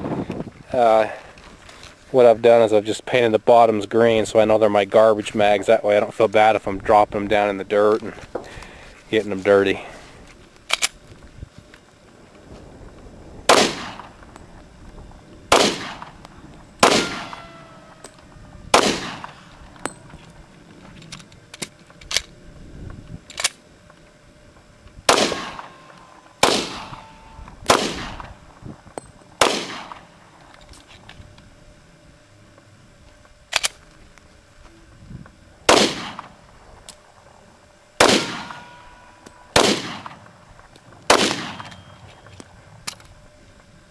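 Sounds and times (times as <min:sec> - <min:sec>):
pistol shots: 0:13.5 - 0:14.1, 0:15.5 - 0:16.2, 0:16.8 - 0:17.6, 0:18.7 - 0:19.5, 0:25.1 - 0:27.1, 0:27.7 - 0:28.4, 0:29.4 - 0:30.1, 0:35.7 - 0:36.3, 0:38.0 - 0:38.9, 0:39.5 - 0:40.3, 0:41.1 - 0:41.8.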